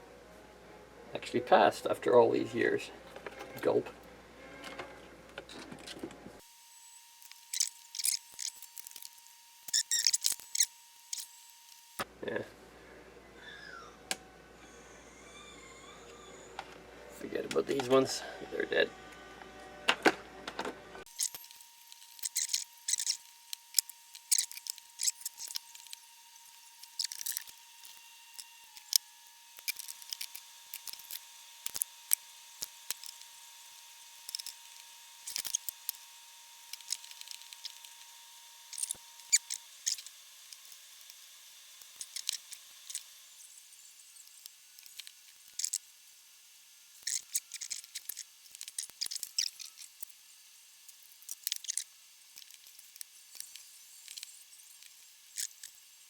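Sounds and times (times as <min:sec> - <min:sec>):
hand tools clicking and snipping: 0:26.8 - 0:29.0, 0:29.6 - 0:33.2, 0:34.2 - 0:36.0.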